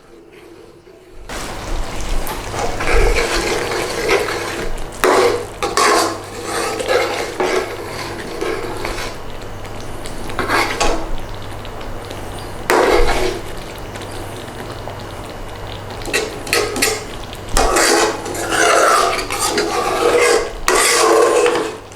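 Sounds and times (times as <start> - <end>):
utensil scraping metal pan: 0.0 - 9.3, 10.0 - 11.1, 12.4 - 13.6, 16.0 - 21.9.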